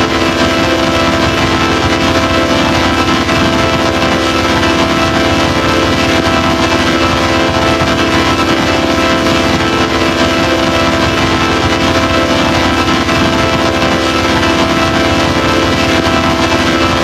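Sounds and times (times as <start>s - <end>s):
loud steady drone: 0.0s - 17.0s.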